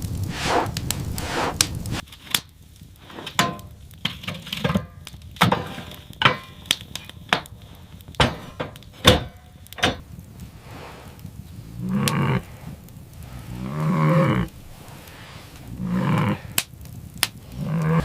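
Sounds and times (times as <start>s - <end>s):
rustling swish: 0.0s - 2.1s, 10.1s - 18.0s.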